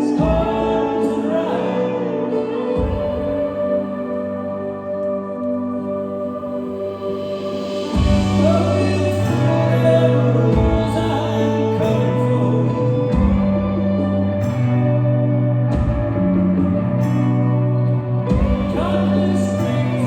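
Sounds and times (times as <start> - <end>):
person singing: 0.0 - 14.7, 18.2 - 20.0
folk-rock band playing live: 0.0 - 20.0
deep bass line: 8.0 - 20.0.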